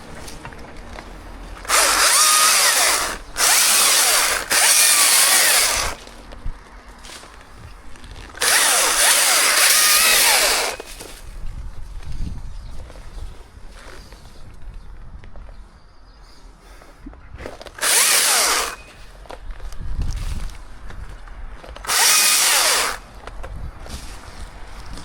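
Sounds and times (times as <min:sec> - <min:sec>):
chainsaw revving: 0:01.6 - 0:06.0, 0:08.3 - 0:11.0, 0:17.8 - 0:18.8, 0:21.8 - 0:23.0.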